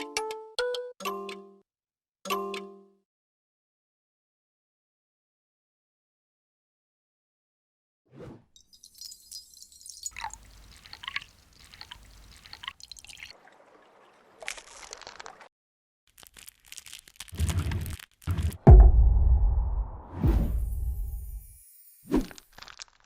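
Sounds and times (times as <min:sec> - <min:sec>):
liquid dripping and trickling: 0:08.7 - 0:15.5
heavy low impact hit: 0:18.7 - 0:21.2.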